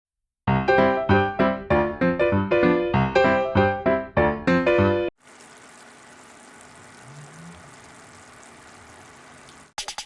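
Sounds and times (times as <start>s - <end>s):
piano melody: 0.5s - 5.1s.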